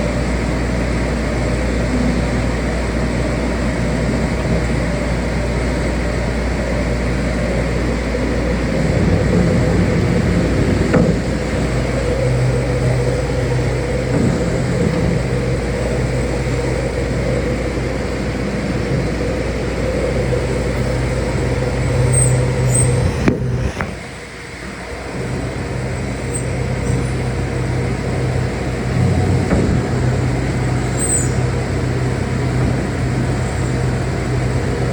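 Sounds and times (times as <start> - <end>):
motor humming: 0.0 - 34.9.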